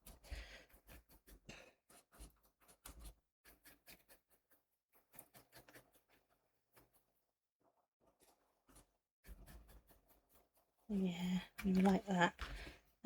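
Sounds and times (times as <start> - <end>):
paintbrush tapping and scratching: 0.0 - 7.1, 8.1 - 13.0.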